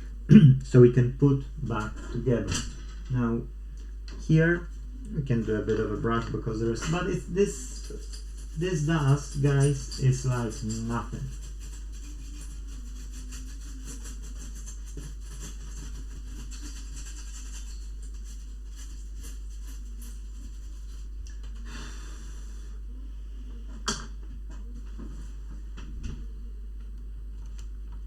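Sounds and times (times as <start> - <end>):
low electrical hum: 0.0 - 28.0
faint scratching: 4.6 - 21.2.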